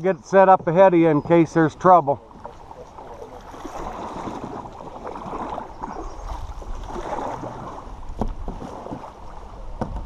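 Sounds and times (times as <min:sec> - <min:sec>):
creek water gurgling: 0:00.0 - 0:10.0.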